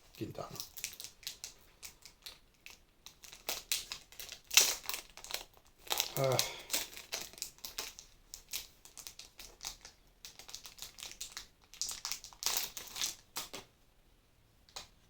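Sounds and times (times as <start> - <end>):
packaging crinkling and rustling: 0.1 - 13.7.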